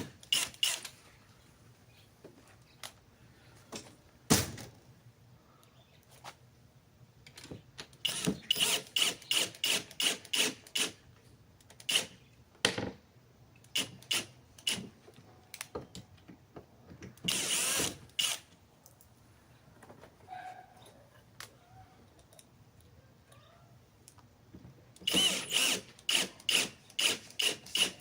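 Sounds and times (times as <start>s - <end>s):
power tool driving screws: 0.0s - 0.9s, 8.0s - 11.0s, 13.8s - 14.8s, 17.2s - 18.5s, 25.0s - 28.0s.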